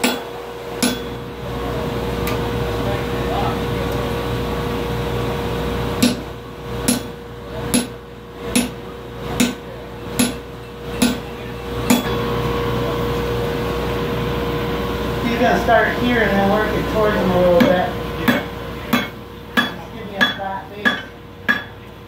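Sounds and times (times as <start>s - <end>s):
steady hum: 0.0s - 22.0s
hammer blows on metal: 17.6s - 21.8s.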